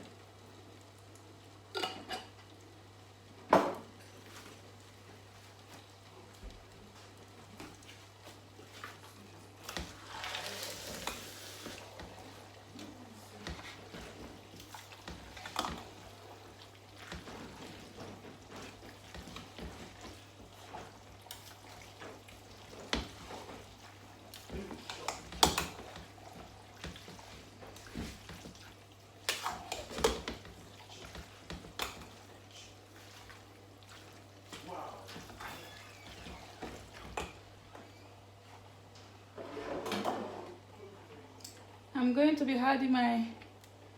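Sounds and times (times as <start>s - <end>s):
utensil knocking and scraping pot: 24.4s - 28.6s, 29.3s - 32.3s.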